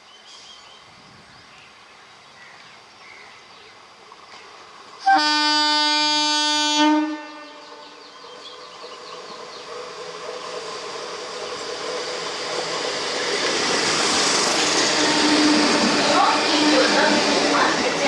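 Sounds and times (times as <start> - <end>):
train rumbling: 0.9 - 18.0
train horn blast: 5.0 - 8.0, 14.7 - 17.2.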